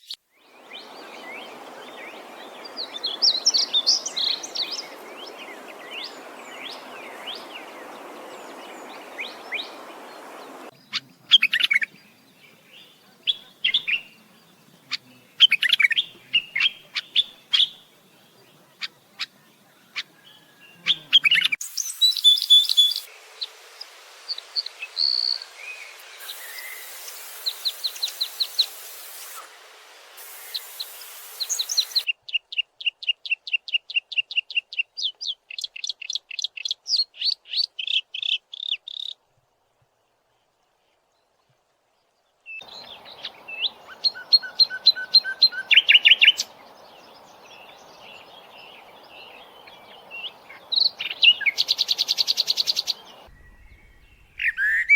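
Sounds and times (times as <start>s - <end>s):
songbirds chirping and singing: 0.0s - 23.5s, 24.3s - 39.2s, 42.5s - 54.9s
steady rushing noise: 0.6s - 10.7s, 23.0s - 32.1s.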